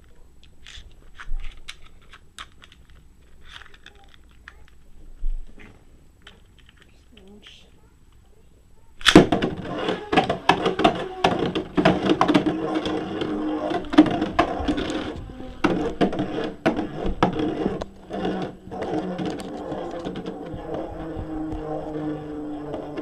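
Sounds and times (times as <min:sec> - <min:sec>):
spinning top whirring: 0:09.1 - 0:23.0.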